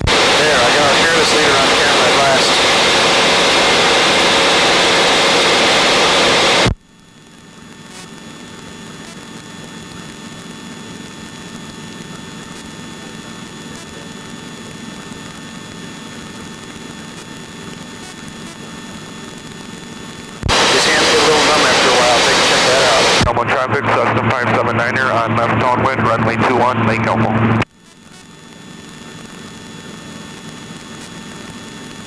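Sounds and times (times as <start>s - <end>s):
thin electronic whine: 0.0s - 32.0s
steady hiss: 0.1s - 6.7s, 20.5s - 23.3s
aircraft cabin engine and propeller: 0.1s - 6.8s, 20.5s - 27.6s.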